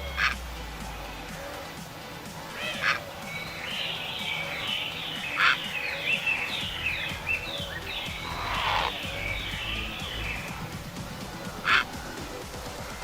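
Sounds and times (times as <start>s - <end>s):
chatter of bird calls: 0.0s - 0.4s, 2.4s - 13.0s
heron squawking: 0.0s - 0.4s, 2.5s - 10.4s, 11.3s - 12.1s.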